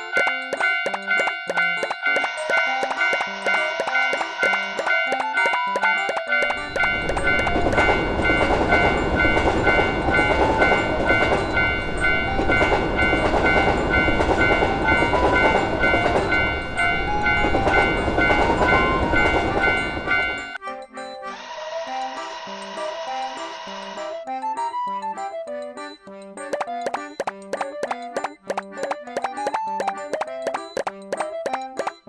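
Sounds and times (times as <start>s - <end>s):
crossing warning bell clanging: 0.0s - 24.0s
train rumbling past: 6.7s - 20.3s.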